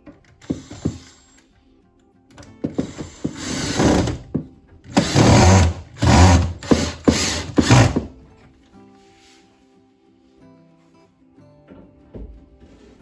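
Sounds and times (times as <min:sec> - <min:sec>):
power tool running in bursts: 0:03.3 - 0:04.2, 0:05.0 - 0:08.1.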